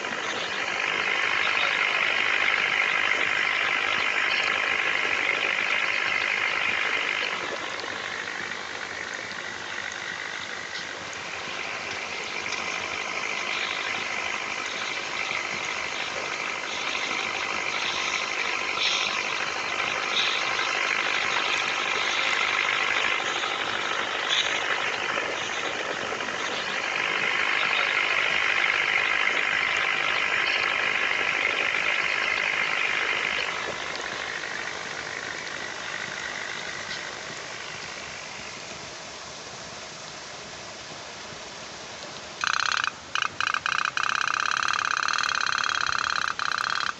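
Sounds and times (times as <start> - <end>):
toy steam boat engine putt-putt: 42.4 - 46.9.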